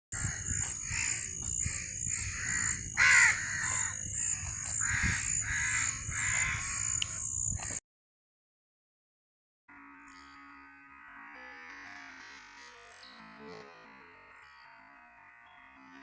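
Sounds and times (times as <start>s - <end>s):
crows cawing: 0.2s - 7.2s
steady high-pitched buzz: 0.2s - 7.8s, 9.7s - 16.0s.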